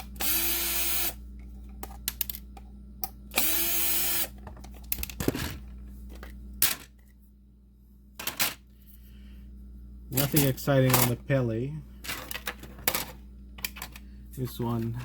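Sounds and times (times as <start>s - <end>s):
electric screwdriver whirring: 0.0s - 1.2s, 3.3s - 4.4s.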